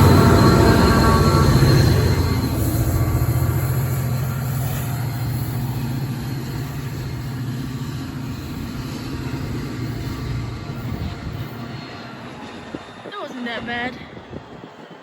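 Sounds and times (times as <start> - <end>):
diesel locomotive engine hum: 0.0 - 15.0.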